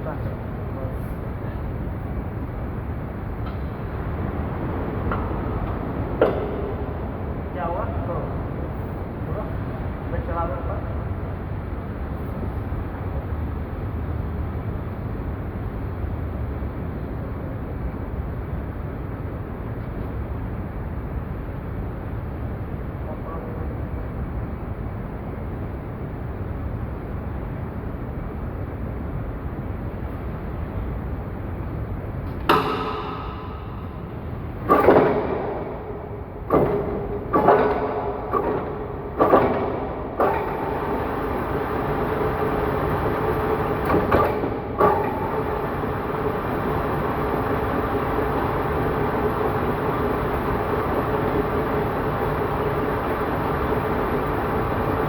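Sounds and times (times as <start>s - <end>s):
sharp metallic clanks: 32.4s - 35.9s
lathe machinery running: 32.4s - 55.0s.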